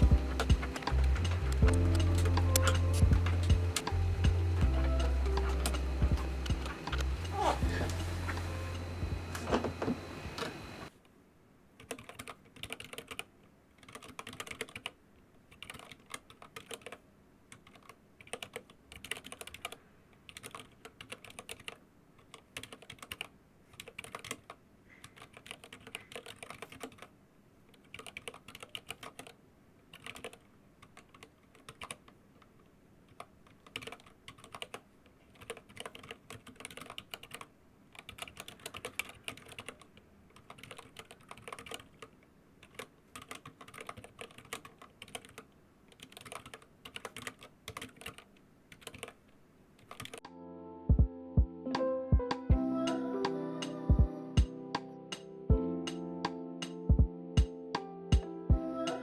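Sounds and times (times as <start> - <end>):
mechanical keyboard typing: 0.0 - 7.4, 11.8 - 50.3.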